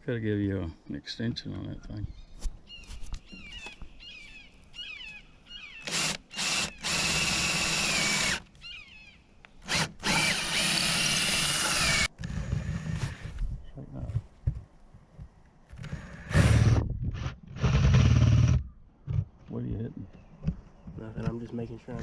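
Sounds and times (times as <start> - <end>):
power drill running: 5.8 - 8.5, 9.6 - 13.3.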